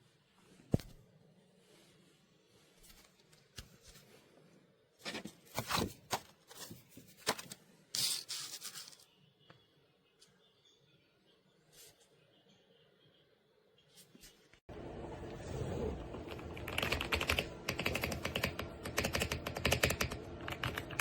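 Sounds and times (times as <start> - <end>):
rustling and rubbing: 5.0 - 9.1.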